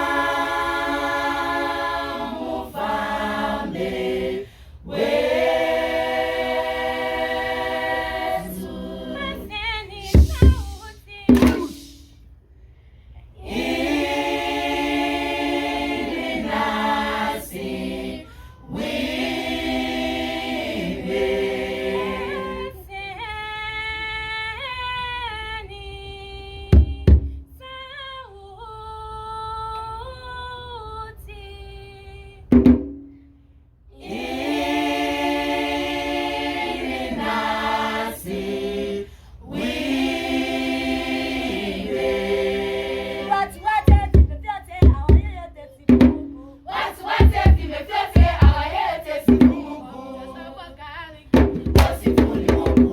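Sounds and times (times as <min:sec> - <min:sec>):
choir singing a cappella: 0:00.0 - 0:12.2, 0:13.2 - 0:32.4, 0:33.9 - 0:52.9
sharp knocks: 0:10.2 - 0:11.9.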